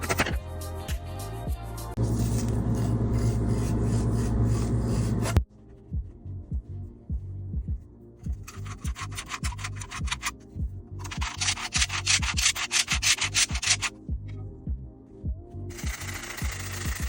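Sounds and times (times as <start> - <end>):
thudding background music: 0.0 - 1.0, 5.4 - 17.0.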